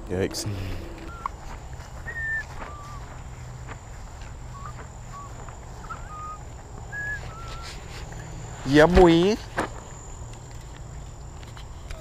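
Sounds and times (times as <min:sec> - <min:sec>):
low background rumble: 0:00.0 - 0:08.7
small birds whistling: 0:00.6 - 0:09.4.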